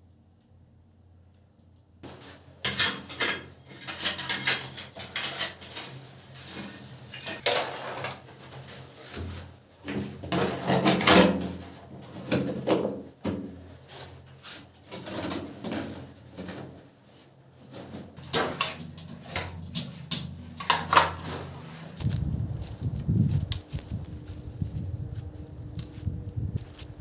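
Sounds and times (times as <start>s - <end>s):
objects knocking and clattering: 18.2s - 21.5s.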